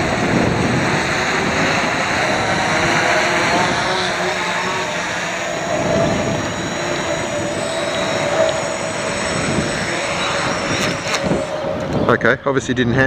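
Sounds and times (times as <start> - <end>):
quadcopter motors whirring: 0.0 - 12.8
wind rush on microphone: 0.0 - 13.0.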